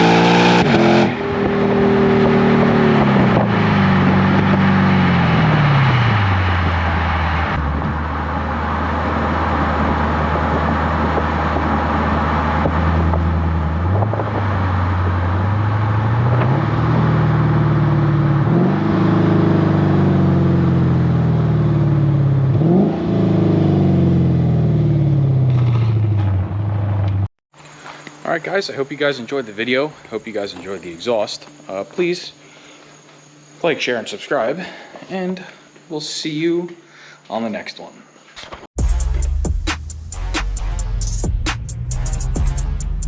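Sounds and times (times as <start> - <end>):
car engine revving while driving: 0.0 - 27.3.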